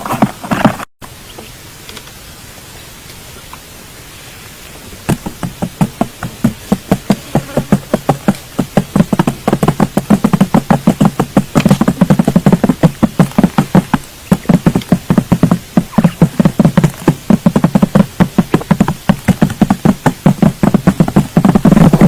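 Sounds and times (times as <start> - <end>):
rapid short knocks: 5.1 - 22.0.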